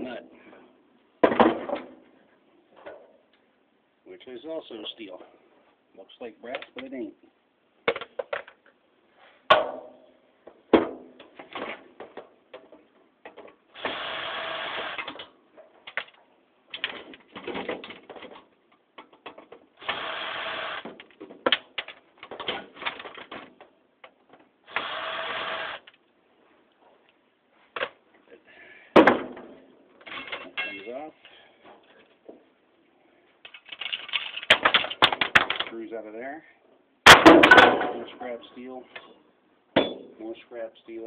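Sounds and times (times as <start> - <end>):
power drill running: 13.8 - 15.0, 19.8 - 20.8, 24.7 - 25.9
metal parts clinking: 30.0 - 31.1, 33.4 - 35.8.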